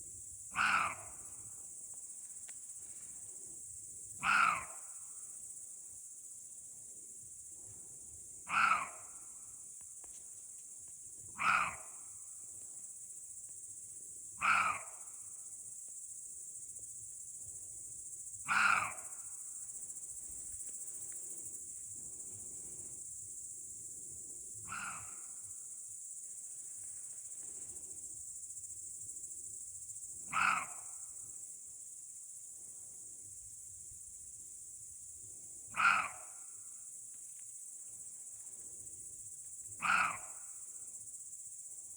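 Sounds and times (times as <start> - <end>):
deer barking: 0.5 - 1.2, 4.2 - 4.7, 8.5 - 9.1, 11.4 - 12.0, 14.4 - 14.9, 18.5 - 19.0, 30.3 - 30.8, 35.7 - 36.4, 39.8 - 40.4.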